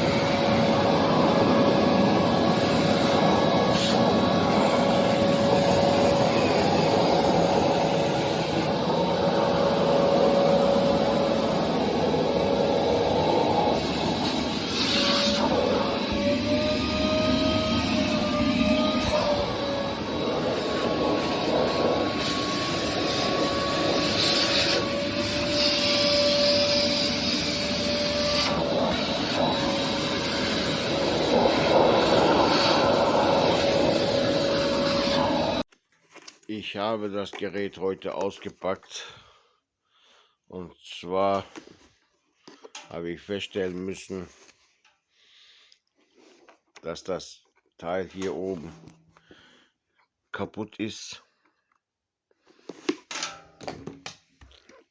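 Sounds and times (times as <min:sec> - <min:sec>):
vacuum cleaner motor running: 0:00.0 - 0:35.7.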